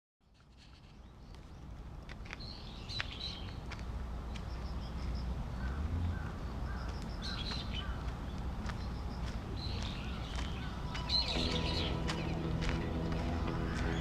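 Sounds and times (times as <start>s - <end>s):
birds chirping: 0.4s - 3.7s, 4.3s - 14.0s
steady low rumble: 3.5s - 14.0s.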